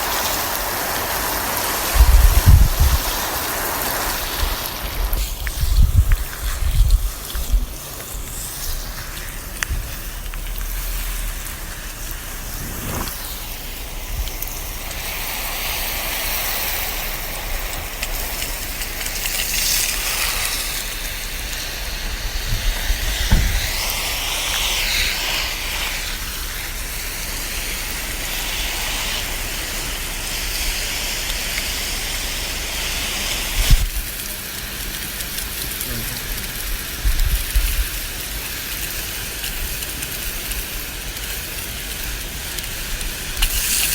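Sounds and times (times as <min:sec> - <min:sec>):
hose spraying water on plants: 0:00.0 - 0:43.9
soft knocks: 0:23.2 - 0:23.8.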